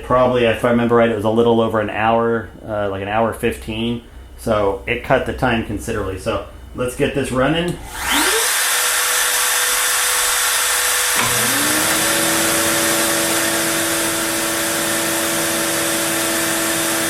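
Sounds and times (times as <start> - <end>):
shop vacuum whining: 7.7 - 17.0
router spindle humming: 7.9 - 17.0.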